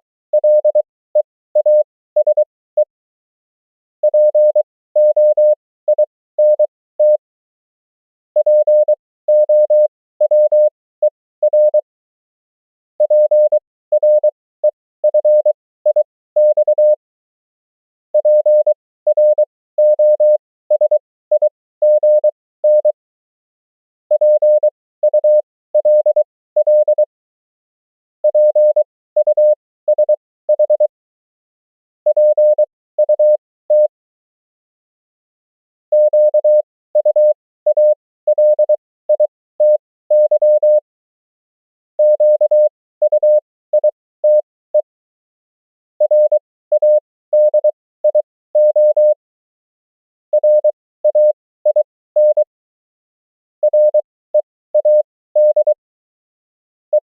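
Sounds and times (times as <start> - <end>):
morse code tone: 35.9 - 40.8, 46.0 - 49.2, 50.3 - 52.5, 53.6 - 55.8.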